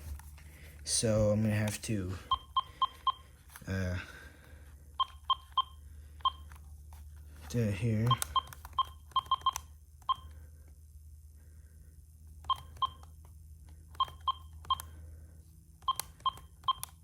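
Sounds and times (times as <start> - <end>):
low electrical hum: 0.0 - 17.0
handset key-press beeps: 2.3 - 3.2, 5.0 - 6.6, 8.0 - 10.3, 12.4 - 13.1, 13.9 - 14.9, 15.8 - 17.0.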